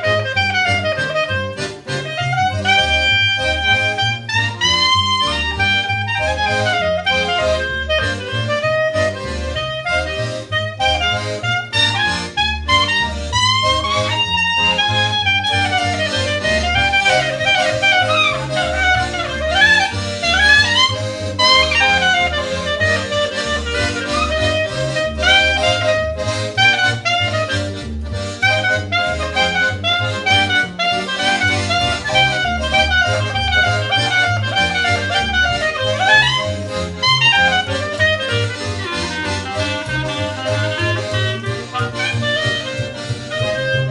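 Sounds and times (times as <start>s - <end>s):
bass line: 0.0s - 43.9s
jazz lead melody with sliding notes: 0.0s - 43.9s.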